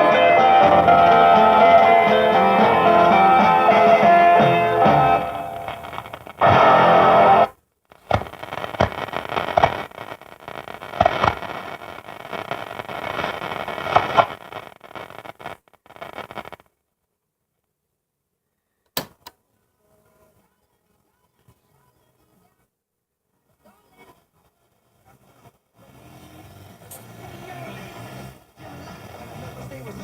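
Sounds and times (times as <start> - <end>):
radio loudspeaker crackling noise: 0.0 - 16.7, 26.7 - 30.0
sharp clicks: 5.6 - 6.6, 7.4 - 11.7, 12.9 - 16.7.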